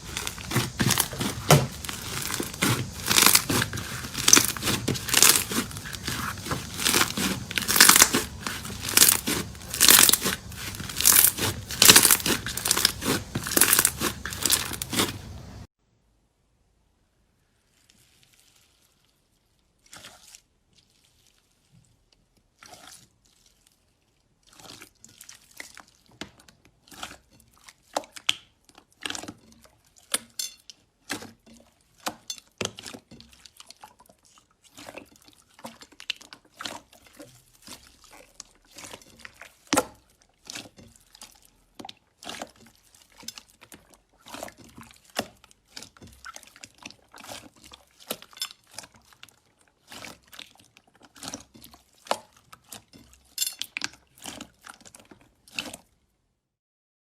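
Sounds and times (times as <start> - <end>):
slime squeezed popping: 0.1 - 15.2.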